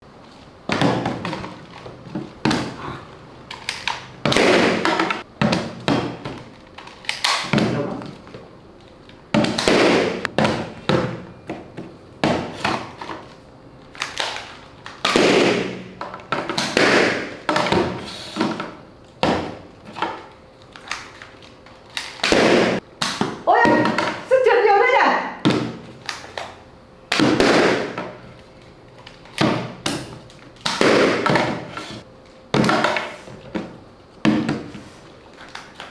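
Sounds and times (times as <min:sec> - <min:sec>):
sharp pops and bangs: 0:27.1 - 0:28.0.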